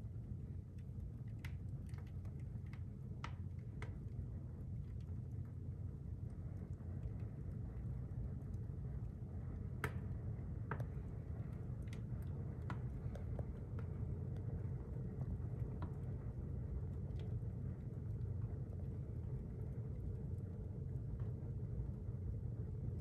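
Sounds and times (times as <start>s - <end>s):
fire crackling and popping: 0.0s - 23.0s
fire rumbling: 0.0s - 23.0s.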